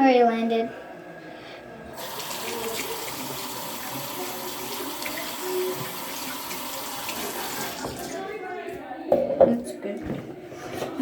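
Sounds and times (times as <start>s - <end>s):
tap water running into sink: 2.0s - 8.2s.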